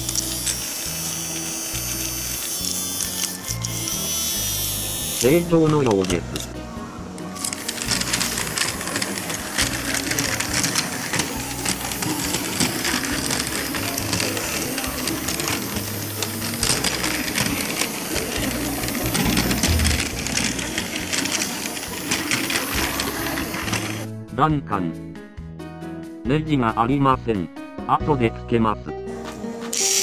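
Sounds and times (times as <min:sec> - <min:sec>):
toy train motor whirring: 0:00.0 - 0:06.6, 0:07.2 - 0:24.1, 0:29.7 - 0:30.0
clatter of wheels and gears: 0:07.4 - 0:24.1.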